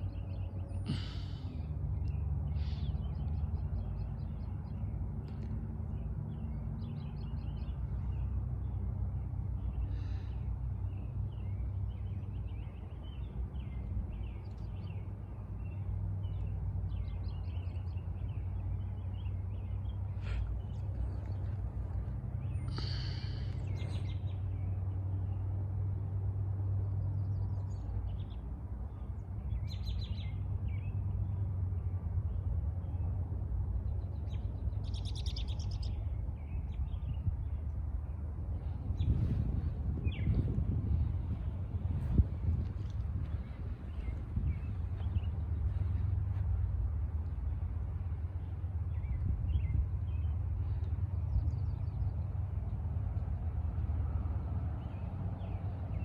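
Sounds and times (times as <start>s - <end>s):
songbirds chirping and singing: 0.0s - 56.0s
steady low rumble: 0.0s - 56.0s.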